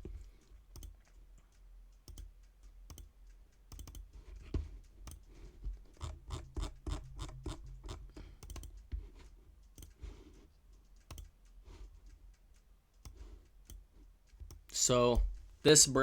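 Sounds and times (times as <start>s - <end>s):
mouse clicks: 0.0s - 4.4s, 5.9s - 12.2s
computer keyboard typing: 0.0s - 15.0s
steady low hum: 0.0s - 16.0s.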